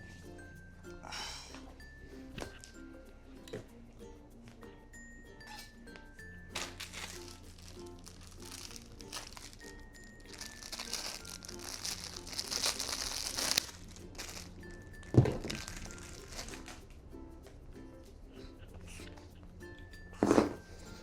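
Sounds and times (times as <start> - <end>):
light background music: 0.0 - 21.0
packaging crinkling: 6.6 - 16.8.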